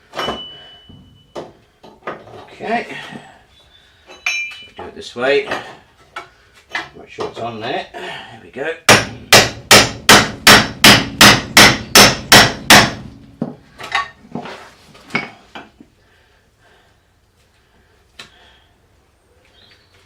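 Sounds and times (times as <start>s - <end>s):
hammer striking metal: 8.9s - 13.1s.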